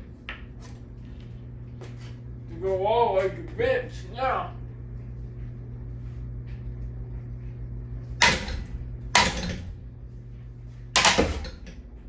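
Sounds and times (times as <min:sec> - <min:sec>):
steady low hum: 0:00.0 - 0:12.0
blows striking a ceiling fan: 0:04.6 - 0:12.0.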